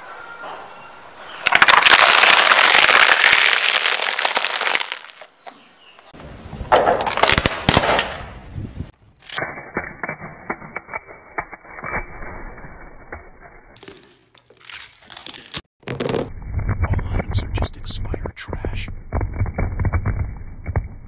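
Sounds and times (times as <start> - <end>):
objects crushed under car tyres: 1.4 - 5.2.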